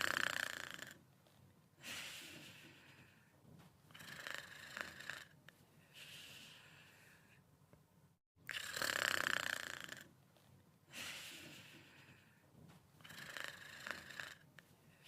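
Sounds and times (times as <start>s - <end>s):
rasping snores: 0.0s - 1.0s, 3.9s - 5.4s, 8.5s - 10.1s, 13.0s - 14.5s.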